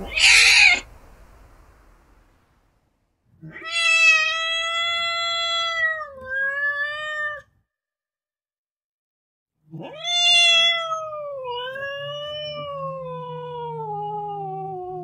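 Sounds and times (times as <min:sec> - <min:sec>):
cat meowing angrily: 0:00.0 - 0:00.9, 0:03.4 - 0:07.6, 0:09.7 - 0:15.0.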